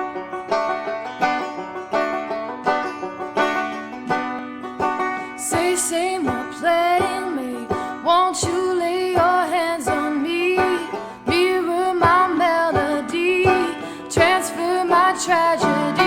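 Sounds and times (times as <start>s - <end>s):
plucked strings picking pattern: 0.0s - 16.0s
person singing: 5.4s - 16.0s.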